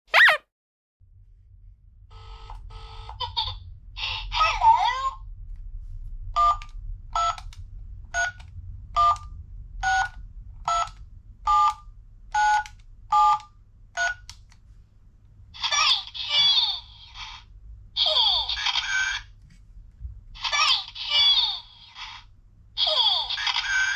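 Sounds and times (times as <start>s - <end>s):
chirpy electronic toy sound: 0.1s - 0.4s
toy phone two-tone dialing beeps: 12.4s - 14.2s.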